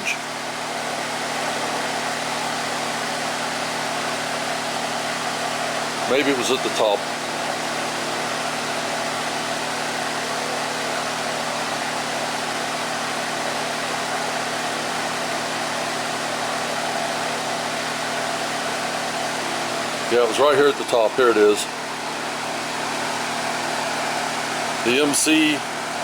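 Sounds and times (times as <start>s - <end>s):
electric fan whooshing: 0.0s - 26.0s
low fan motor hum: 0.0s - 26.0s.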